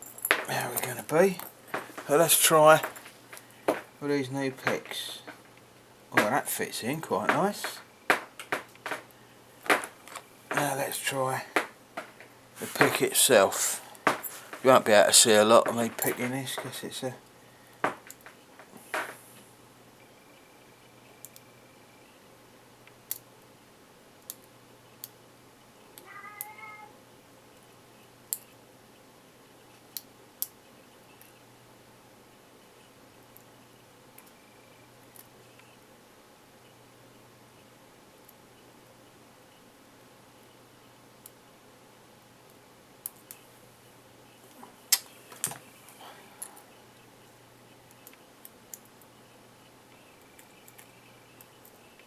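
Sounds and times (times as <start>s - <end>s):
short meow-like cry: 26.0s - 26.9s.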